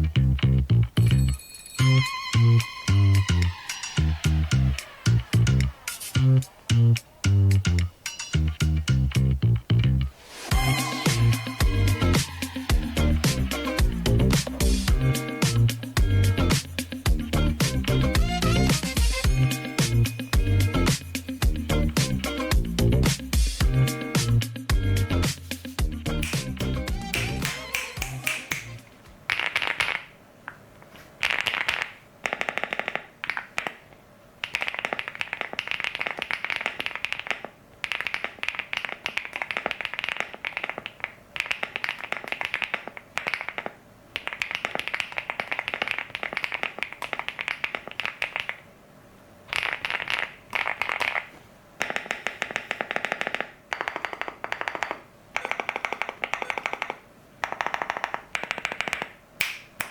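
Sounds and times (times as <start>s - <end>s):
mechanical keyboard key clacks: 51.8s - 59.1s.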